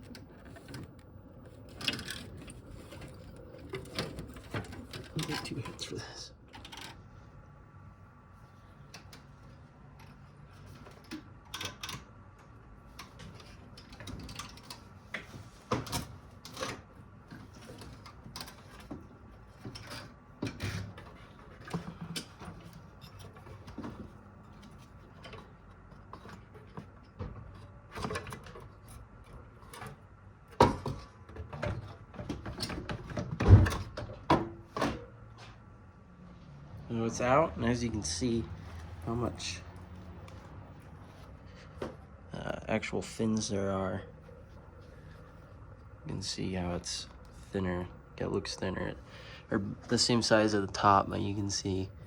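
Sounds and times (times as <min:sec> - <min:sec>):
knocks clunks and rattles: 0:00.0 - 0:06.9, 0:13.0 - 0:35.6.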